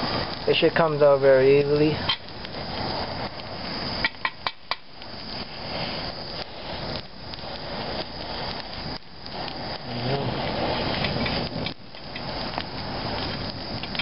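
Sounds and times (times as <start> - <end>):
fire rushing: 0.0 - 14.0.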